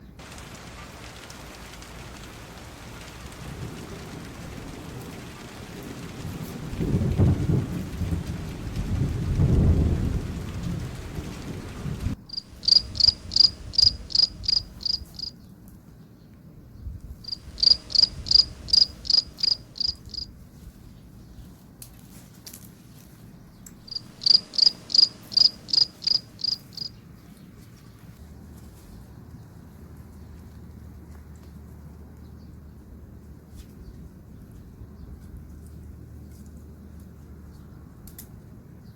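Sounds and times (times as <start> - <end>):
steady rain: 0.0 - 15.4, 17.0 - 38.8
low rolls of thunder: 0.2 - 15.3, 17.1 - 20.4, 23.8 - 26.9
high-pitched insect chirping: 12.3 - 15.3, 17.3 - 20.3, 23.9 - 26.9.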